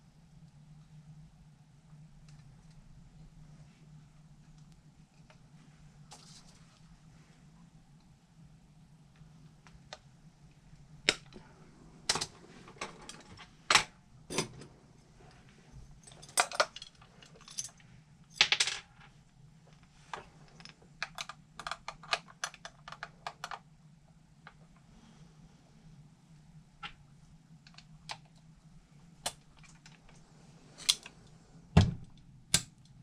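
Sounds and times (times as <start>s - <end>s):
small plastic parts clicking: 20.1s - 23.6s.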